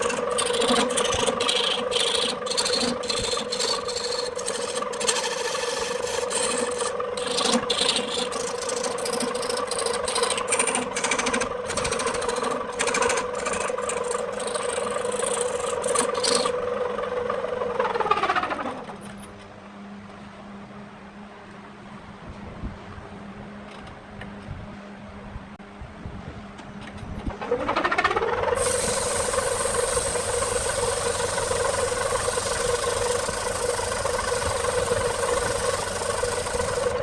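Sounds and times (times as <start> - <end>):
wood lathe motor hum: 0.0 - 19.3, 27.1 - 37.0
tool scraping spinning wood: 0.0 - 19.4, 26.9 - 37.0.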